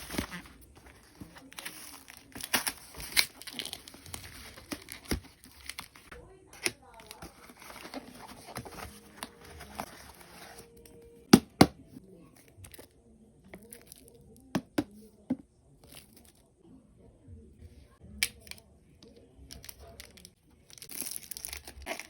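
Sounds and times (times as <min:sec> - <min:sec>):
plastic wrapping tearing and crinkling: 0:19.6 - 0:22.0.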